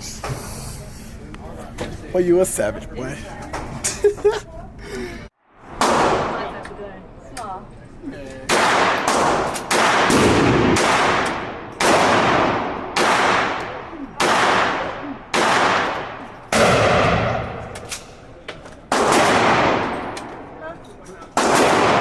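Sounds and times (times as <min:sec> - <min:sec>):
echoing gunshots: 0:05.6 - 0:06.6, 0:08.5 - 0:18.0, 0:18.9 - 0:20.6, 0:21.4 - 0:22.0.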